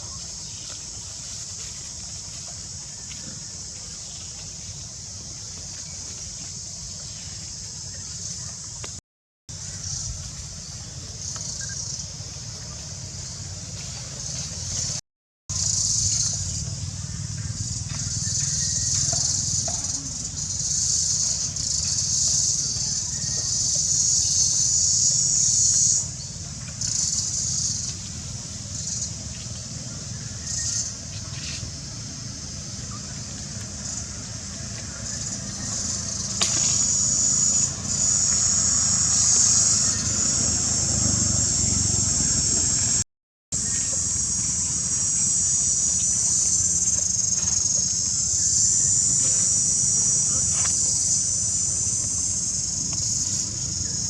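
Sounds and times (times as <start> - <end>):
insect chorus drone: 0.0 - 43.0, 43.6 - 54.0
high-pitched buzzing drone: 35.6 - 43.0, 43.6 - 54.0.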